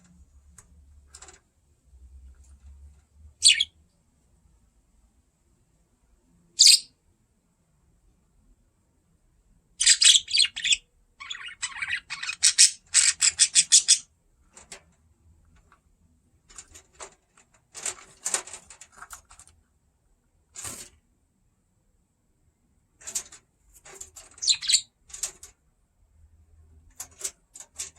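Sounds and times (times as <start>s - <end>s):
budgerigar chirping: 3.4s - 3.7s, 6.6s - 6.9s, 9.8s - 14.0s, 24.4s - 24.9s.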